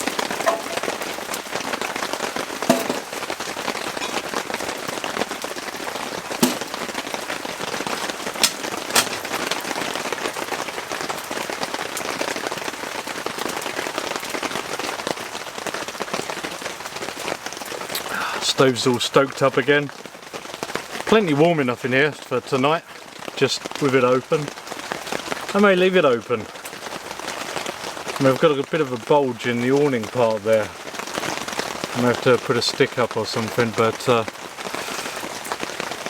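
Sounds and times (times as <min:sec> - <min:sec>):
heavy rain on tent fabric: 0:00.0 - 0:36.0
sharp knocks and clicks: 0:02.7 - 0:03.1, 0:06.4 - 0:06.8.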